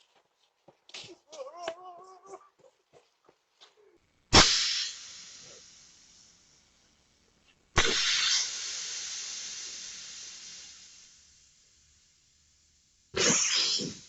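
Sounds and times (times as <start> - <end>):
sharp bang turning into hiss: 4.3 - 6.6, 7.7 - 14.0.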